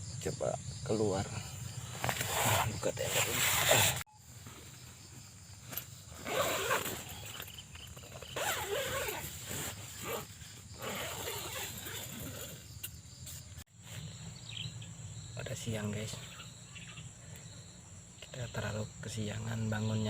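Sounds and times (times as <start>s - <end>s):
tent fabric rustling: 1.8s - 14.1s
zipper being pulled open: 1.9s - 4.0s, 5.7s - 12.9s.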